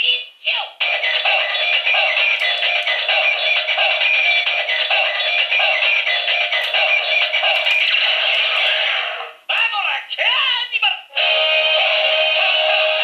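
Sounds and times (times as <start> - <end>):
toy playing tinny song: 0.8 - 9.3, 11.1 - 13.0.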